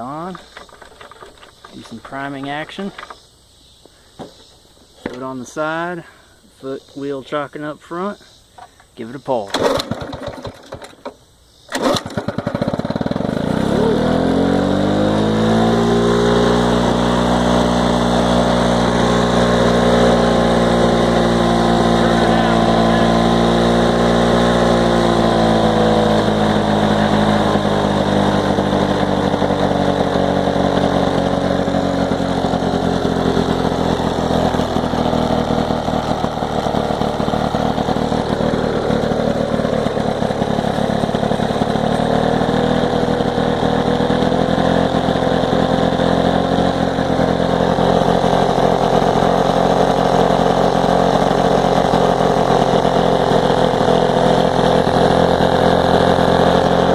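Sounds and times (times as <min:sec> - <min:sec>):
lawn mower engine running: 0:00.0 - 0:03.2, 0:08.6 - 0:56.9.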